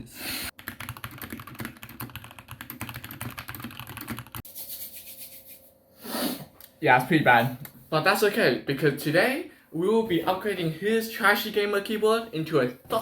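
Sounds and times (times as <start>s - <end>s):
mechanical keyboard typing: 0.6s - 4.4s.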